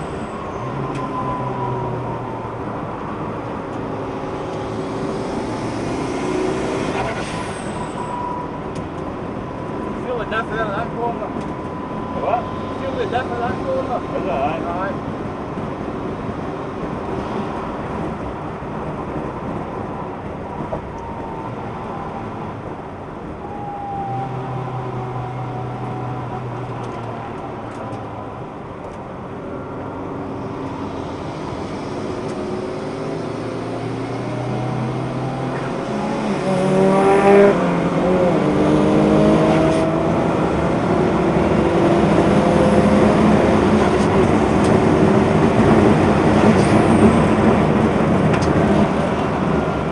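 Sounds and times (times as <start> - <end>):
road and wind noise: 0.0 - 49.9
car engine revving: 0.8 - 7.3, 30.0 - 49.9.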